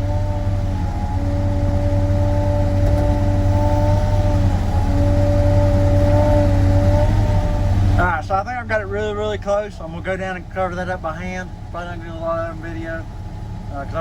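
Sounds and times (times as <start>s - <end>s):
diesel engine running: 0.0s - 14.0s
steady whine: 0.0s - 14.0s.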